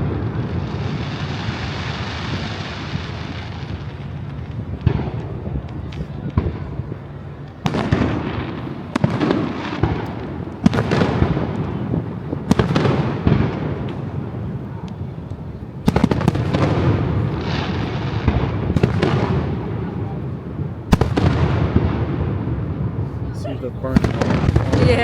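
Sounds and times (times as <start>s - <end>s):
fireworks bursting: 0.0s - 25.0s
rumble after bangs: 24.0s - 25.0s.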